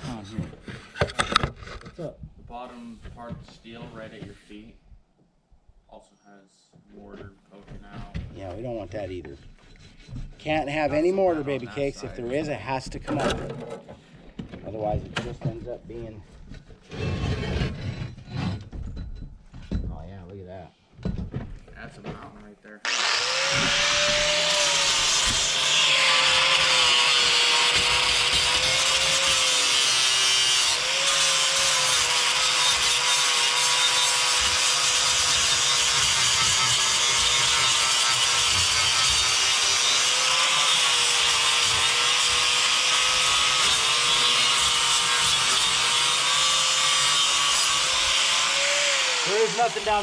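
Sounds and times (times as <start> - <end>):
angle grinder grinding: 22.8 - 50.0.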